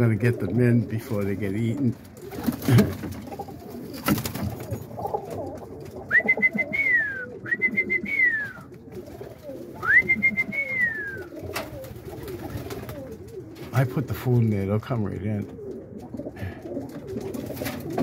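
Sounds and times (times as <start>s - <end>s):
pigeons cooing: 0.0s - 18.0s
high whistle-like calls: 6.1s - 8.7s, 9.8s - 11.3s.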